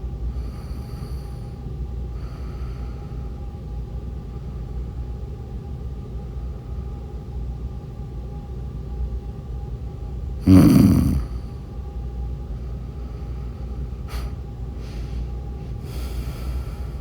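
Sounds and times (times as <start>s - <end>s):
faint steady hum: 0.0s - 17.0s
woman snoring: 10.4s - 11.5s
breathy hisses: 14.1s - 17.0s.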